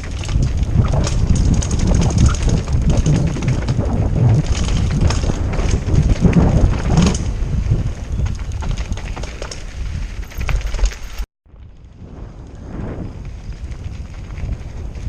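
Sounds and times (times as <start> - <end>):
wind buffeting microphone: 0.0 - 10.9, 11.5 - 15.0
mountain bike rattling: 0.0 - 15.0.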